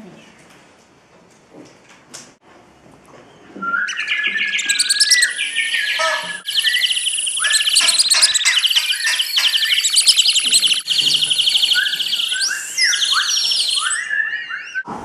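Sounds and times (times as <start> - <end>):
many birds chirping: 3.3 - 14.9.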